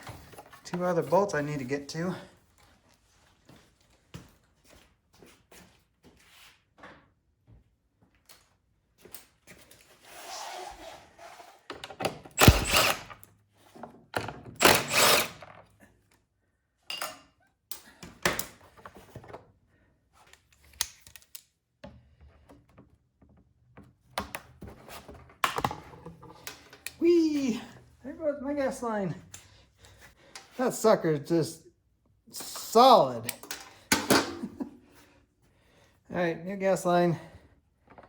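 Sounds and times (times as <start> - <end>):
hand tools clicking on metal: 12.4 - 13.2.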